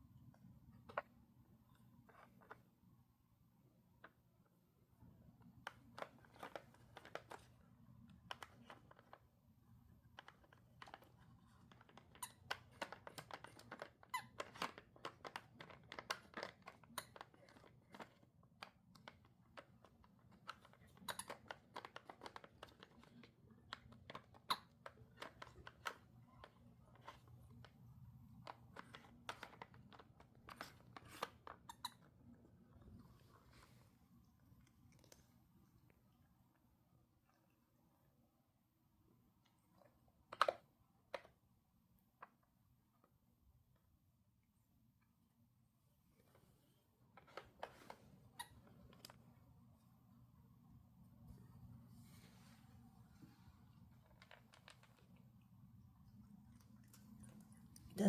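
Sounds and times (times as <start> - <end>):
cat crunching dry treats: 5.5 - 33.7, 53.0 - 58.0.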